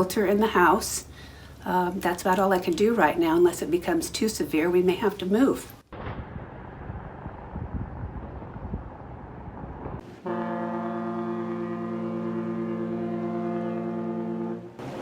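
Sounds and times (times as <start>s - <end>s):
steady rushing noise: 5.8s - 10.3s
ship's horn blast: 10.0s - 15.0s.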